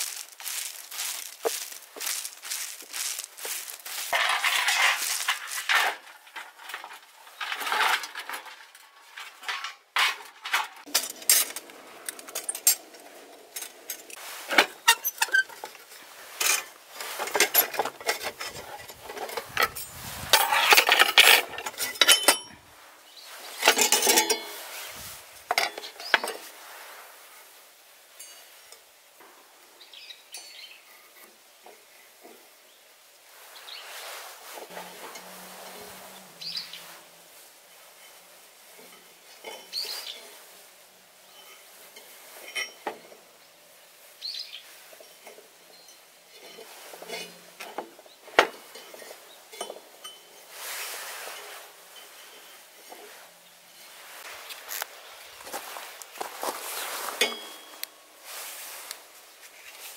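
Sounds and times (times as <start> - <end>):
rustling: 0.0 - 29.4, 30.8 - 59.9
dishes and cutlery clinking: 9.4 - 22.6, 23.6 - 24.6, 45.0 - 50.5, 56.6 - 58.0.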